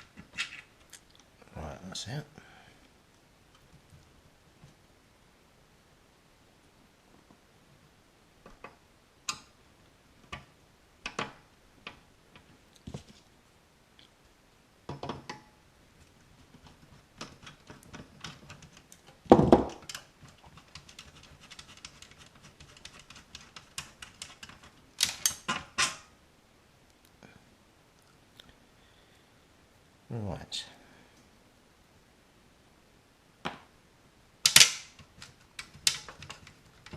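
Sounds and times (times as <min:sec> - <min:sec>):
small tools and metal parts clattering: 0:00.0 - 0:00.9, 0:16.6 - 0:26.1, 0:34.4 - 0:36.9.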